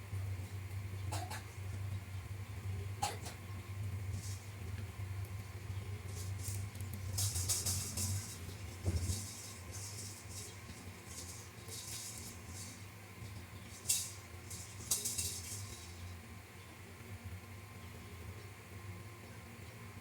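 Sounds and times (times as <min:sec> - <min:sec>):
low steady hum: 0:00.0 - 0:20.0
small parts scraping and clicking: 0:06.1 - 0:16.2.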